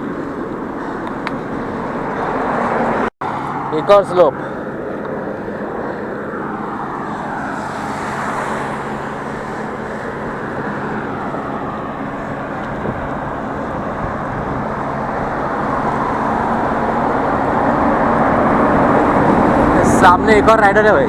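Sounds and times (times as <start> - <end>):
passing motor traffic: 0.0 - 21.0
wind on microphone: 6.5 - 20.4.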